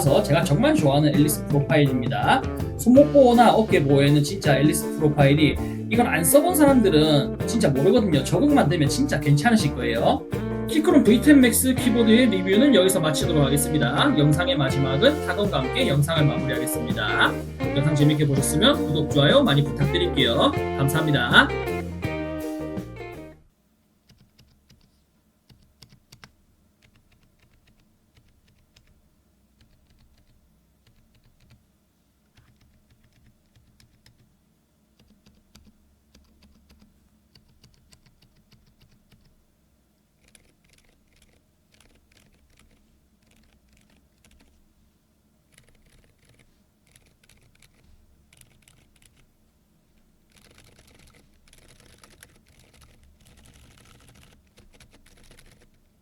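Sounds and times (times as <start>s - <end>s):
muted keyboard typing: 24.0s - 31.6s, 32.3s - 34.3s, 35.0s - 39.4s, 40.2s - 44.6s, 45.5s - 49.3s, 50.3s - 55.9s.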